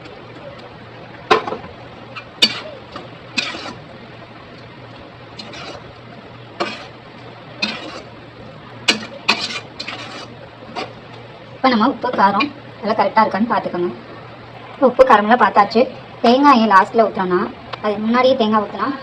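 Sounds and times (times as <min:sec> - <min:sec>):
faint steady hum: 0:00.0 - 0:19.0
metal spoon scraping cookware: 0:02.1 - 0:02.8, 0:03.4 - 0:03.8, 0:05.4 - 0:05.8, 0:06.6 - 0:06.9, 0:07.6 - 0:08.1, 0:08.9 - 0:11.0.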